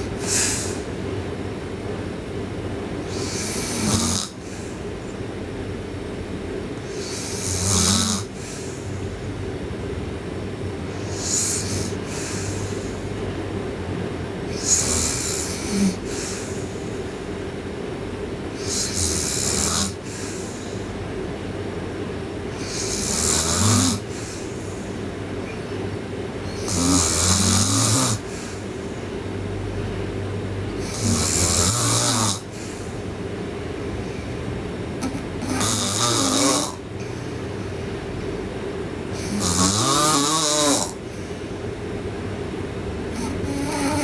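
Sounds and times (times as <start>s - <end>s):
girl snoring loudly: 0.0s - 0.9s, 3.0s - 4.8s, 6.9s - 8.7s, 11.0s - 13.1s, 14.5s - 16.8s, 18.6s - 20.9s, 22.6s - 24.9s, 26.5s - 28.8s, 30.8s - 32.8s, 35.0s - 36.9s, 39.2s - 41.0s, 43.1s - 44.0s.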